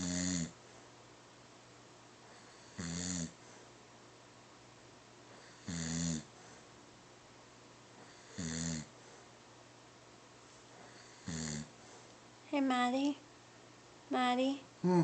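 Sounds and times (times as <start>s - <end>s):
person snoring: 0.0s - 0.5s, 2.7s - 3.4s, 5.6s - 6.3s, 8.3s - 8.9s, 11.2s - 11.7s.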